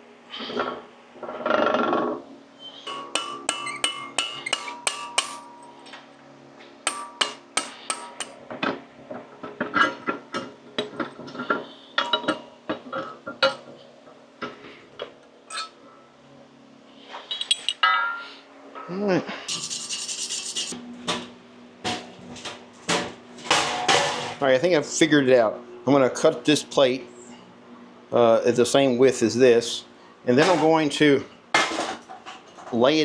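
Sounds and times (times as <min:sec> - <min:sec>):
hammer striking steel: 0:02.9 - 0:05.7, 0:06.8 - 0:08.3.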